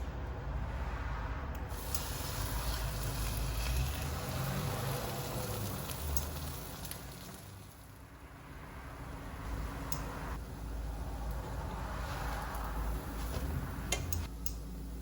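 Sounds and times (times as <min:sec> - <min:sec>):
food sizzling in a frying pan: 0:01.7 - 0:08.0.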